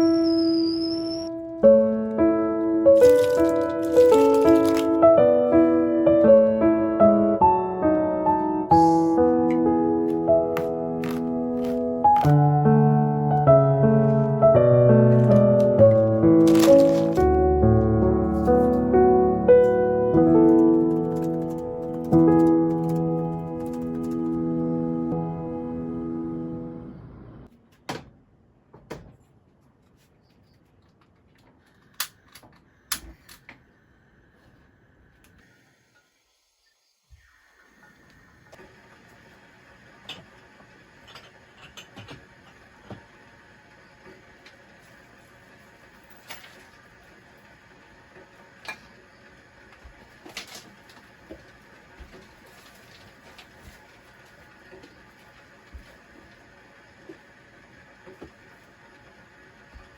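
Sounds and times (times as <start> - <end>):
soft background music: 1.0 - 27.4.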